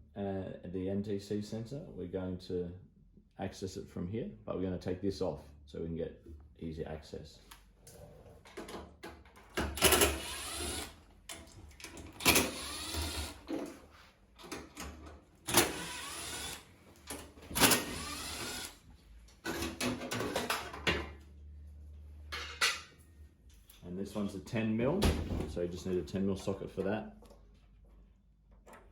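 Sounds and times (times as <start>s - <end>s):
cordless drill whirring: 10.0s - 11.0s, 12.2s - 13.4s, 15.5s - 16.7s, 17.6s - 18.8s.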